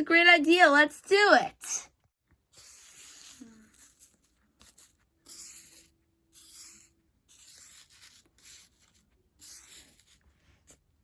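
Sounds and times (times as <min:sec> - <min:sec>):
scratchy strokes on a surface: 0:02.5 - 0:11.0.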